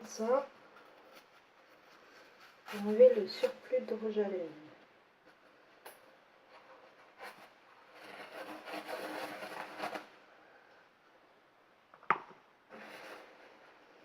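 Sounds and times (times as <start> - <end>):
paper rustling and rubbing: 0.0 - 4.1, 4.8 - 10.2.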